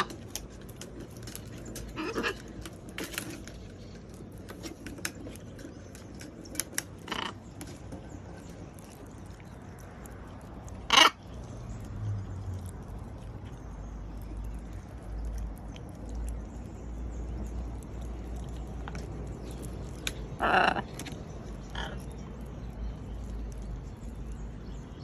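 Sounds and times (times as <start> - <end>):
parrot beak clicks and scrapes: 0.0 - 12.0, 17.3 - 23.7.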